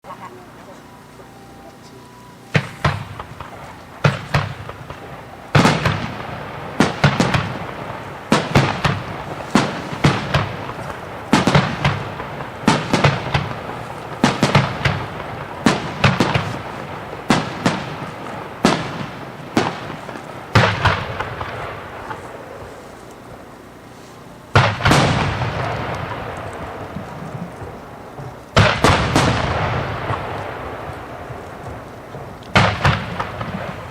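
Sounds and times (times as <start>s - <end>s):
fireworks shell bursts: 1.5s - 22.4s.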